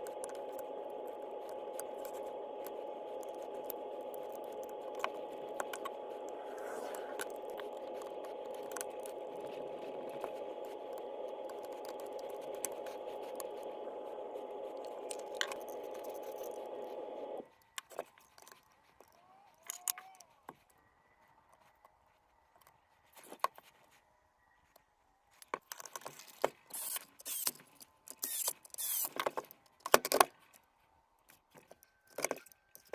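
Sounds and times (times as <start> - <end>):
steady whirring hiss: 0.0 - 17.5.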